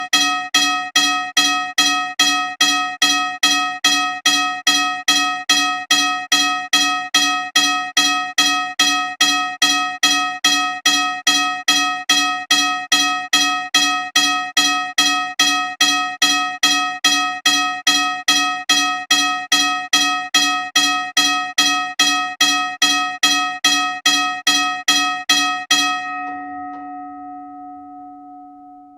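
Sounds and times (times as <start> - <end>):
railroad crossing bell striking: 20.8 - 28.9.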